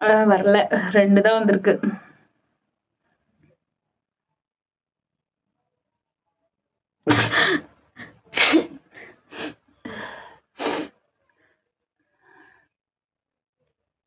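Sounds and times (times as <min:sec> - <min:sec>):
person sneezing: 0:07.1 - 0:07.6, 0:08.3 - 0:09.5.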